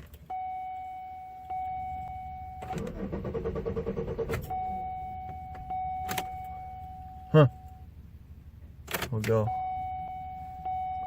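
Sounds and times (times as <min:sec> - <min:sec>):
car engine cranking: 0:02.6 - 0:04.7.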